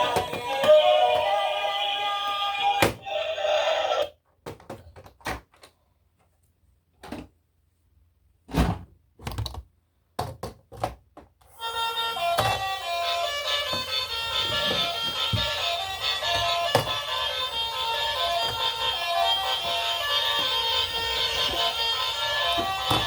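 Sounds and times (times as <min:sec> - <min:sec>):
background music: 0:00.0 - 0:03.0, 0:11.6 - 0:23.0.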